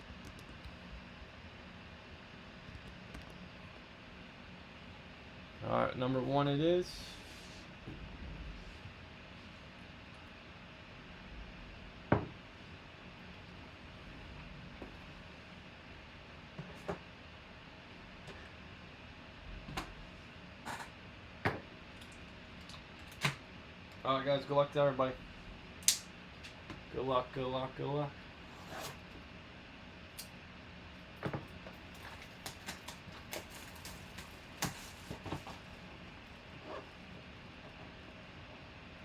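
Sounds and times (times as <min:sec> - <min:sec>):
card packaging clicks and crinkles: 0:31.7 - 0:35.8.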